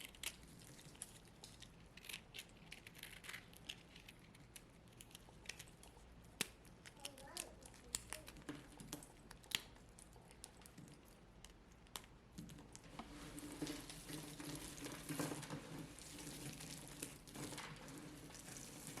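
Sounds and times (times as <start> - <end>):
brittle block crackling and crunching: 0.0 - 12.7.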